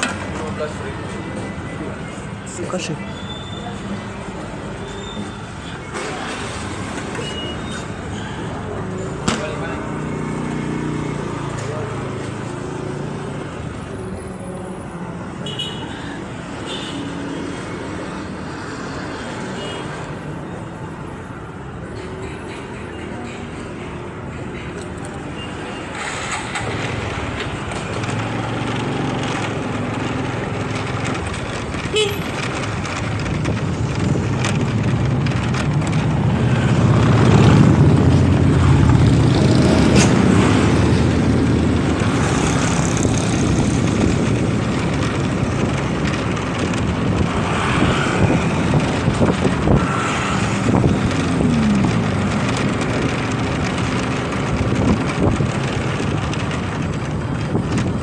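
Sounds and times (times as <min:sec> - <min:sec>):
wind noise on microphone: 0:31.0 - 0:58.0.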